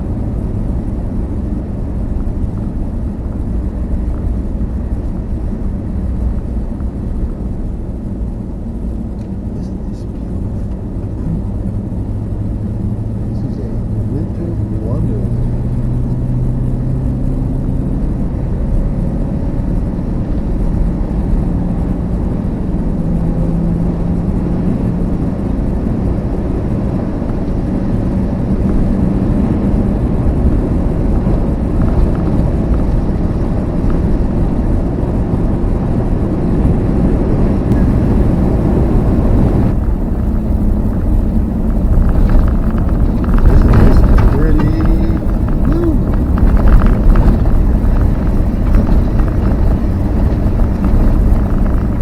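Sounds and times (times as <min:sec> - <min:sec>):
road noise: 0:00.0 - 0:52.0
van engine drone: 0:00.0 - 0:52.0.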